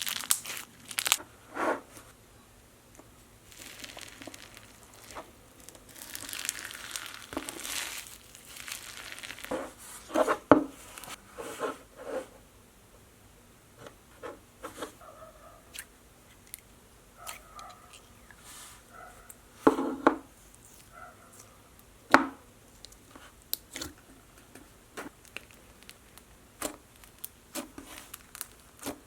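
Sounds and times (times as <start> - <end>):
slime squeezed by hand crackling: 0.0 - 1.2, 3.5 - 9.5.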